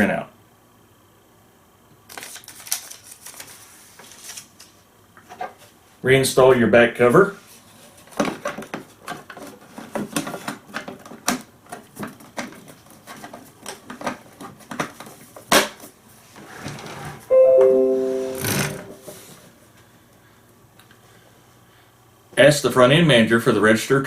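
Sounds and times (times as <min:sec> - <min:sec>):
descending three-tone chime: 0:17.3 - 0:19.1.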